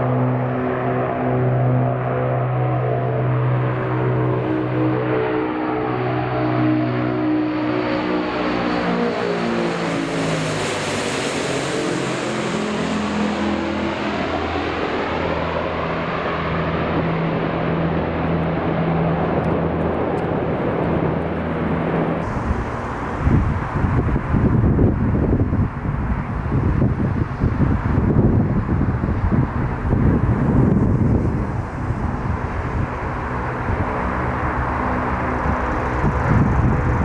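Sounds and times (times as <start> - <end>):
vehicle engine passing by: 0.0 - 17.9, 21.7 - 37.0
wind buffeting microphone: 14.3 - 37.0.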